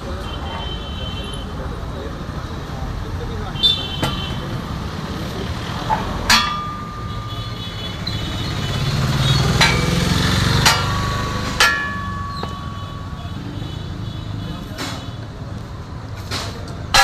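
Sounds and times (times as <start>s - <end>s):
hammer ringing on steel: 6.3s - 8.1s, 9.5s - 13.4s.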